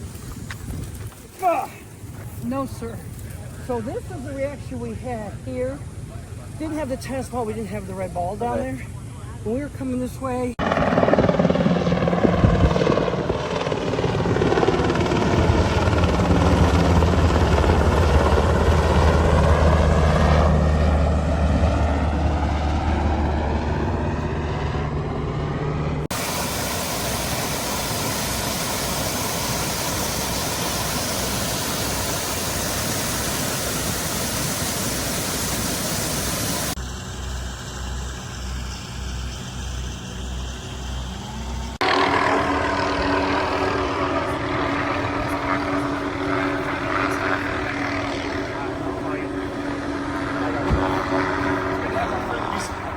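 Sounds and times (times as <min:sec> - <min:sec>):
helicopter flying overhead: 0:00.0 - 0:52.9
low rotor thump: 0:10.6 - 0:18.0, 0:41.6 - 0:52.9.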